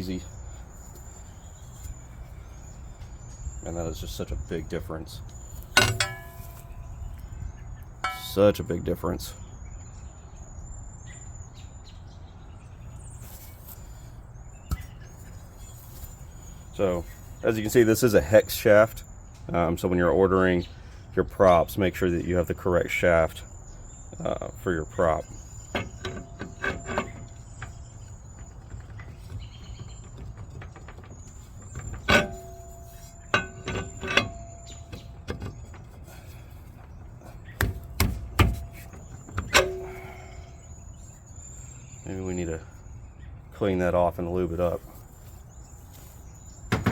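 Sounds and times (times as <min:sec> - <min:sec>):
metallic clinks and knocks: 0:05.6 - 0:07.0, 0:08.0 - 0:08.7, 0:25.7 - 0:36.2, 0:37.6 - 0:40.6.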